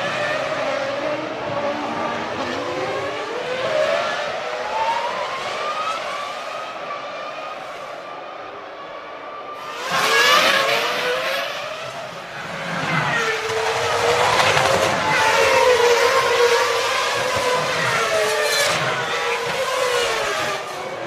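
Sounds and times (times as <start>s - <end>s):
racing car engines revving: 0.0s - 21.0s.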